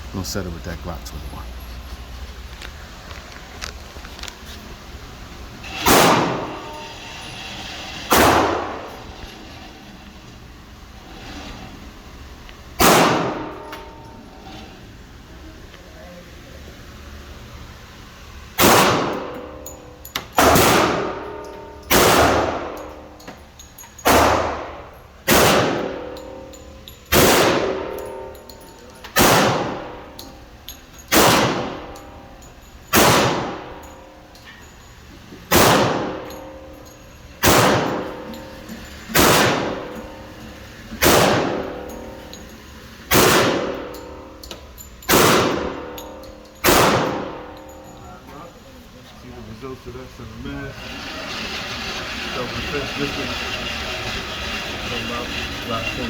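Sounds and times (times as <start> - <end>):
pistol shots with ringing echo: 5.8 - 6.6, 8.1 - 8.8, 12.8 - 13.7, 18.6 - 19.4, 20.4 - 22.9, 24.0 - 26.3, 27.1 - 28.2, 29.2 - 30.0, 31.1 - 32.0, 32.9 - 33.8, 35.5 - 36.4, 37.4 - 38.1, 39.2 - 40.0, 41.0 - 42.0, 43.1 - 44.0, 45.1 - 47.6.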